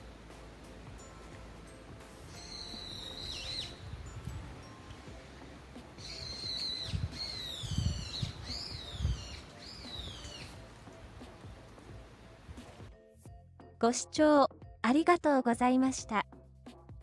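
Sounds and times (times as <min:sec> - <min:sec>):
bird whistling calls: 0:02.3 - 0:03.9, 0:06.0 - 0:10.6.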